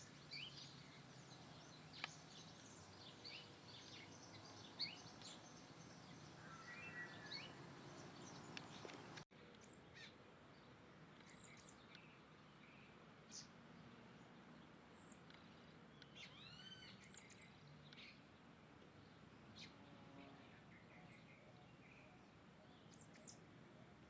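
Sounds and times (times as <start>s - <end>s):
background hiss: 0.0s - 24.0s
birds chirping and whistling: 2.0s - 9.2s.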